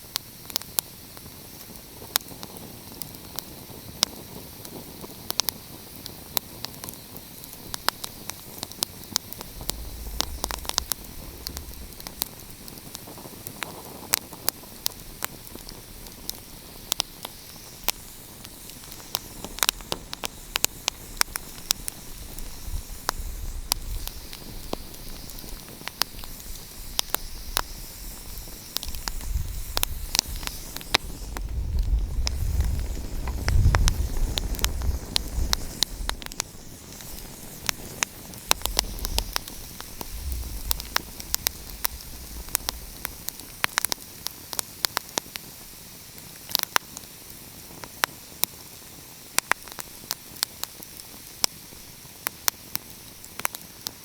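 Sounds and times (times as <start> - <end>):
wood fire crackling: 0.0 - 54.0
low rumble: 9.4 - 12.9, 38.5 - 43.8.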